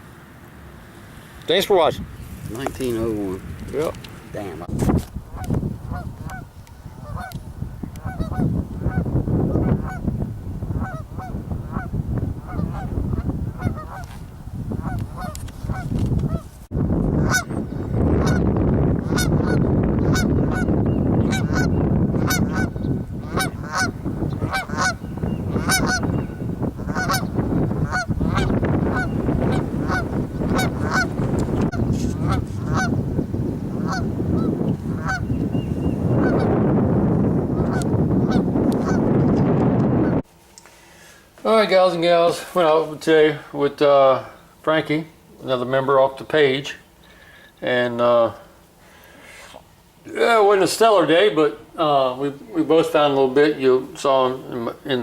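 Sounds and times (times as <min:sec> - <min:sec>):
steady rumble: 0:00.0 - 0:40.3
geese honking: 0:05.3 - 0:14.2, 0:14.8 - 0:16.5, 0:17.1 - 0:33.0, 0:33.7 - 0:36.6, 0:37.5 - 0:39.1.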